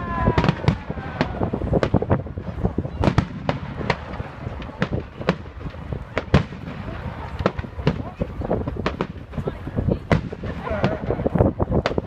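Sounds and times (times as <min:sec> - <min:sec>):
fireworks bangs and cracks: 0:00.0 - 0:12.0.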